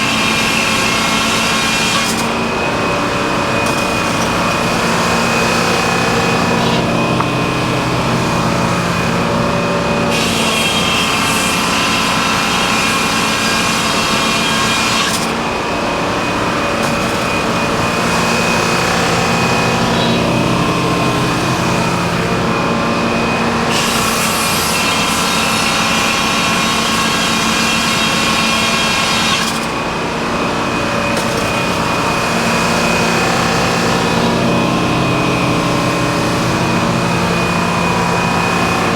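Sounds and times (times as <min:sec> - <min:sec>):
saw blade cutting log: 0:00.0 - 0:02.4, 0:03.4 - 0:15.4, 0:16.8 - 0:29.8
sawmill engine running: 0:00.0 - 0:38.9.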